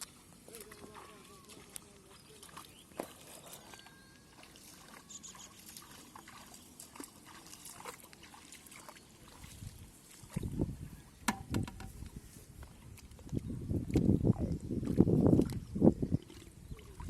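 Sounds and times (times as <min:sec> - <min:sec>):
hands splashing in mud and water: 0:00.0 - 0:10.6.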